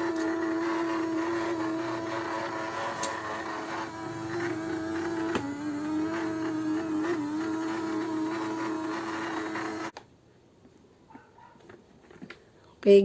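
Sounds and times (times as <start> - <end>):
robot vacuum motor whine: 0.0 - 9.9.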